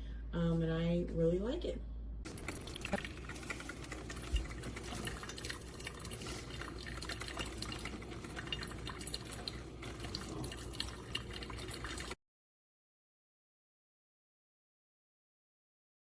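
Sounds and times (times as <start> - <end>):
water trickling and dripping: 2.3 - 12.2.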